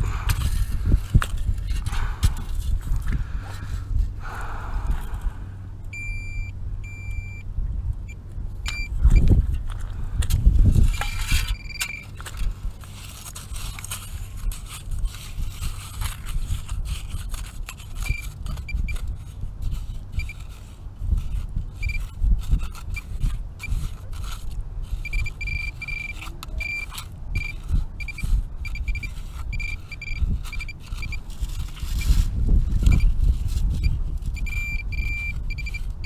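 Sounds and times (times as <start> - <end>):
low rumble on microphone: 0.0 - 36.0
metal detector high beeps: 5.9 - 7.4, 8.7 - 9.3, 10.9 - 12.2, 21.8 - 22.1, 25.0 - 31.2, 33.8 - 35.9
scraping in sand and gravel: 9.0 - 36.0.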